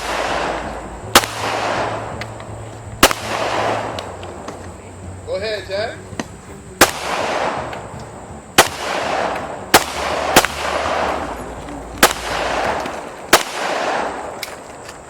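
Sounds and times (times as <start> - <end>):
gunshots with echo: 0.0 - 2.4, 3.0 - 4.4, 6.8 - 8.0, 8.6 - 14.6.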